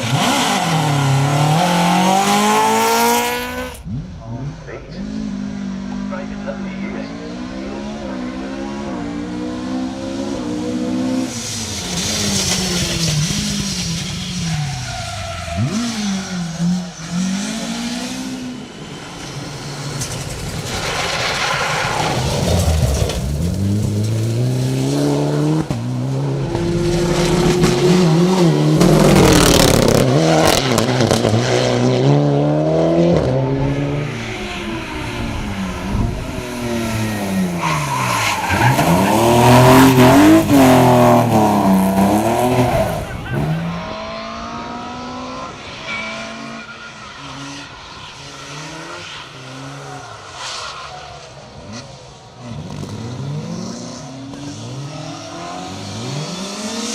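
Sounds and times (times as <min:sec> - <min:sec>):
rally car engine revving: 0:00.0 - 0:56.9
loud rushing noise: 0:17.2 - 0:31.4, 0:33.1 - 0:51.2
tyre skid noise: 0:33.1 - 0:44.8.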